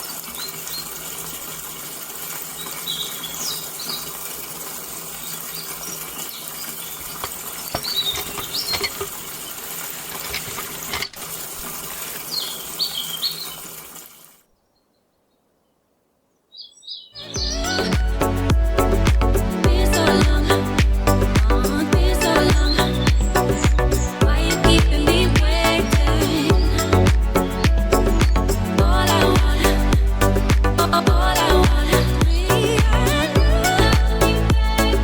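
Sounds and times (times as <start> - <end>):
running water: 0.0 - 14.5, 17.3 - 35.0
high bird chirps: 12.3 - 13.8, 16.4 - 18.2
music: 17.3 - 35.0.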